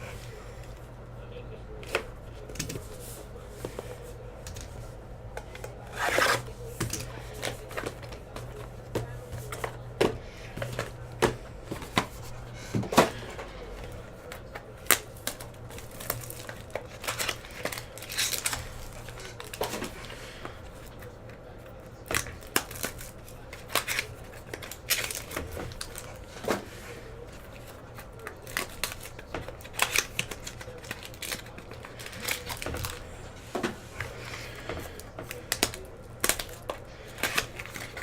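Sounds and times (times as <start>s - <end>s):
steady low hum: 0.0s - 38.0s
wrappers crinkling and tearing: 5.8s - 9.6s, 13.1s - 26.4s, 27.1s - 33.1s, 34.1s - 38.0s.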